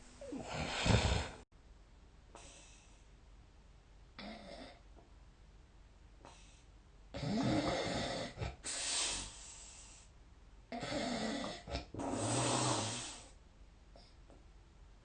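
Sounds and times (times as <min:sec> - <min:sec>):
person snoring loudly: 0:00.2 - 0:01.4, 0:07.2 - 0:08.6, 0:10.8 - 0:13.3.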